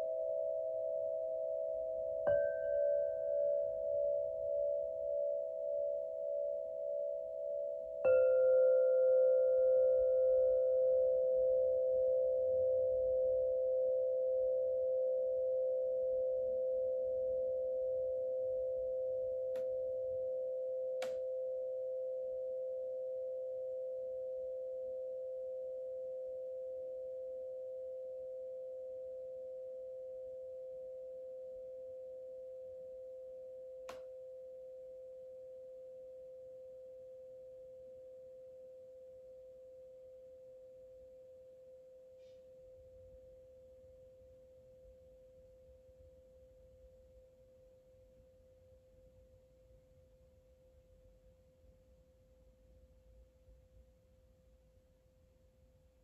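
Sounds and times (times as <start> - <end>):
singing bowl ringing: 0.0 - 42.0.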